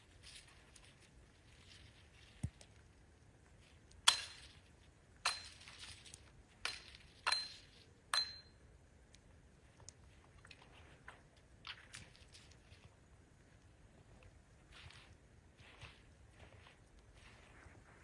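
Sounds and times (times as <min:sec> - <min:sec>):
hard objects clinking: 0:06.7 - 0:08.5.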